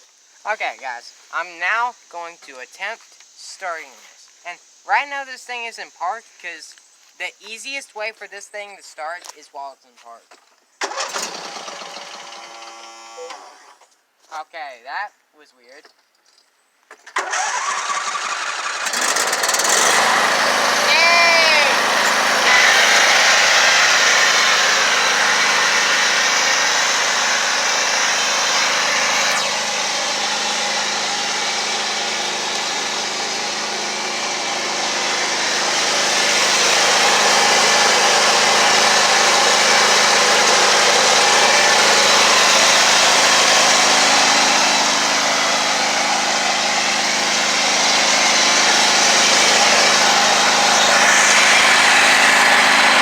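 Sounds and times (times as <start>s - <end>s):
lawnmower engine running: 10.8s - 13.8s, 17.1s - 53.0s.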